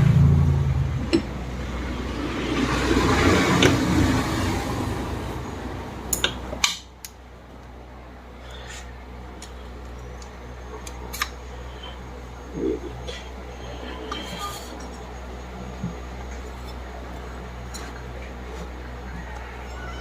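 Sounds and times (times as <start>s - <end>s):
rumbling noise: 0.0s - 6.1s.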